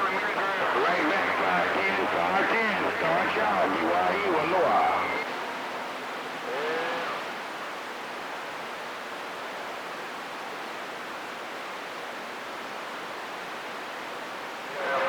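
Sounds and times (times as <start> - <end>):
radio static hiss: 0.0 - 5.3, 14.7 - 15.0.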